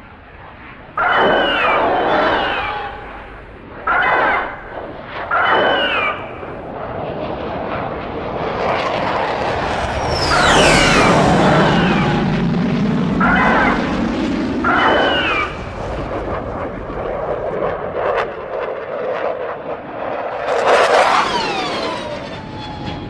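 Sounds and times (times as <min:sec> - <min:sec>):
low jet engine rumble: 0:00.0 - 0:23.0
wailing creature calls: 0:01.0 - 0:04.7, 0:05.3 - 0:06.3, 0:10.3 - 0:12.4, 0:13.2 - 0:14.0, 0:14.6 - 0:15.6.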